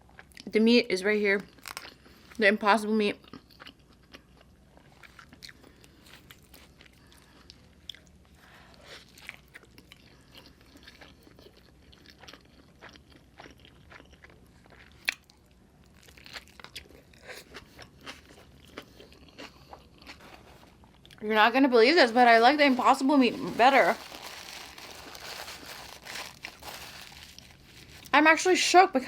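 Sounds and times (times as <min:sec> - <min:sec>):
chewing and biting food: 0:03.2 - 0:21.2.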